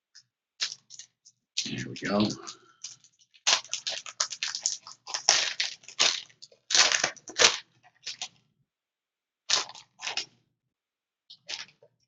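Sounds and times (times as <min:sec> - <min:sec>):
plastic packaging crinkling: 0:00.6 - 0:08.3, 0:09.5 - 0:10.3.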